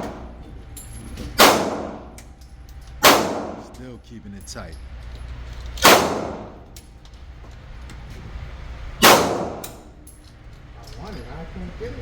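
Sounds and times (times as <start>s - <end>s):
pistol shots with echo: 1.4s - 2.2s, 3.0s - 3.7s, 5.8s - 6.6s, 9.0s - 9.9s.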